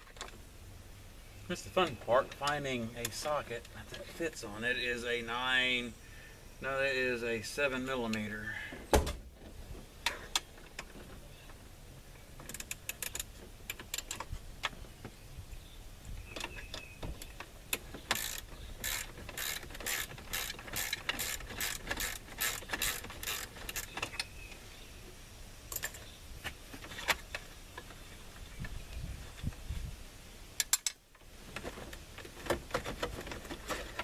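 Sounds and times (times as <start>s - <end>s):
socket ratchet wrench clicking: 18.1s - 23.9s.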